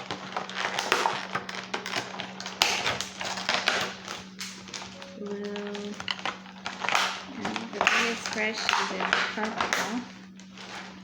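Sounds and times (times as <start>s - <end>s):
packaging taps clicks and rustles: 0.0s - 11.0s.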